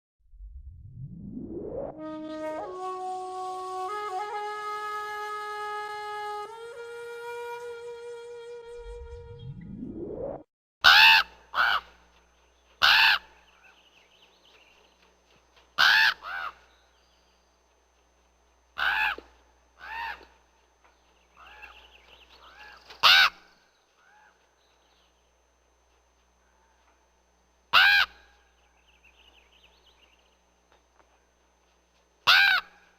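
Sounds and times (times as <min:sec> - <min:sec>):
low rising sweep: 0:00.2 - 0:02.4, 0:08.5 - 0:10.5
raven croaking caws: 0:10.8 - 0:12.0, 0:12.8 - 0:13.8, 0:15.8 - 0:16.7, 0:18.8 - 0:20.4, 0:21.4 - 0:21.8, 0:22.4 - 0:24.5, 0:27.7 - 0:28.4, 0:32.2 - 0:32.9.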